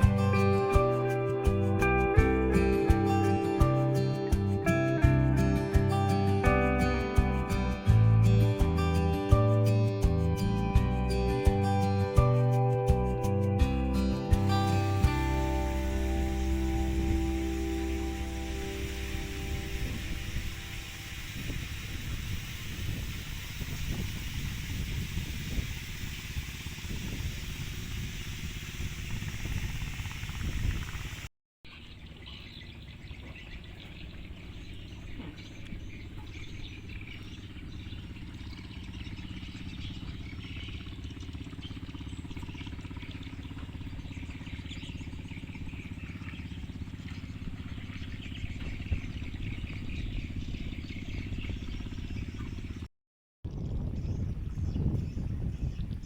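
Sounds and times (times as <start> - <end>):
low hum: 0.0 - 31.3
windy rumbling noise: 13.6 - 31.3, 53.4 - 56.0
small birds chirping: 14.2 - 52.9, 53.5 - 56.0.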